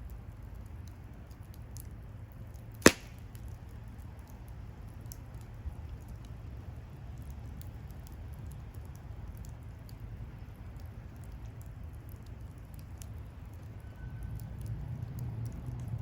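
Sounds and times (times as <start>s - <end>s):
bonfire crackling: 0.6s - 10.0s
low fire rumble: 3.2s - 16.0s.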